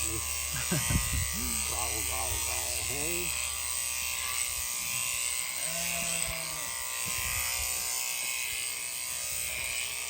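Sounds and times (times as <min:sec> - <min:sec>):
electric shearing handpiece buzzing: 0:00.0 - 0:10.0
sheep grumbling call: 0:05.6 - 0:06.8.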